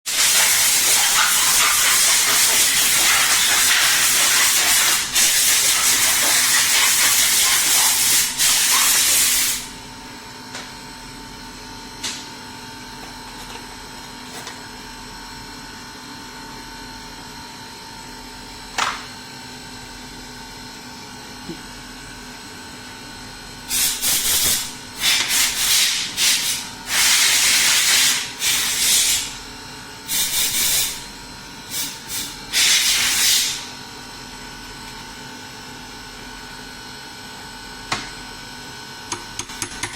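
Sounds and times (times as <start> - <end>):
loud hiss of air or spray: 0.1 - 9.7, 23.7 - 29.4, 30.1 - 31.0, 31.7 - 33.7.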